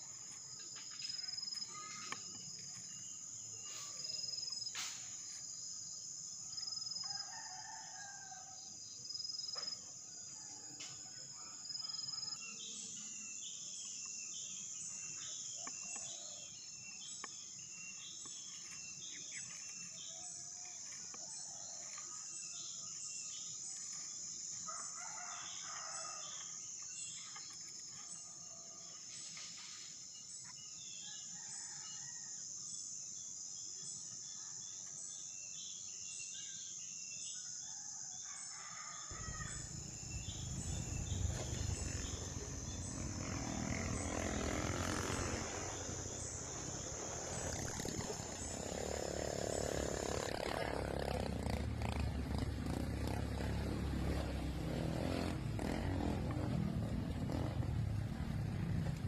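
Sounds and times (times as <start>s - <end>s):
high-pitched insect drone: 39.2s - 51.6s.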